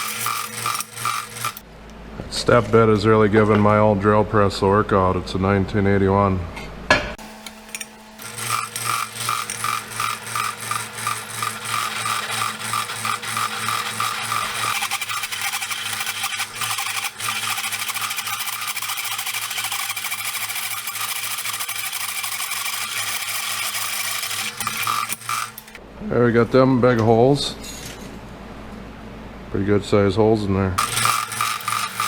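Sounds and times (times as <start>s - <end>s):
drill bit chatter: 0.0s - 1.6s, 7.4s - 25.8s, 30.8s - 32.0s
drill press motor hum: 0.0s - 1.6s, 7.2s - 25.8s, 30.8s - 32.0s.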